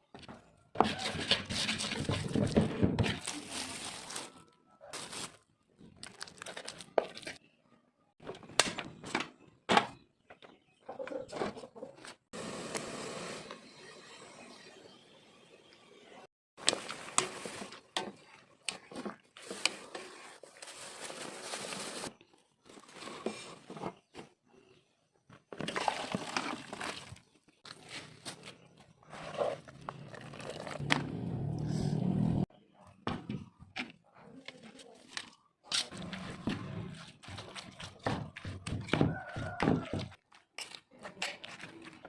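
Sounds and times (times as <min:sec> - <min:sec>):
crinkling and tearing: 0:03.2 - 0:07.4.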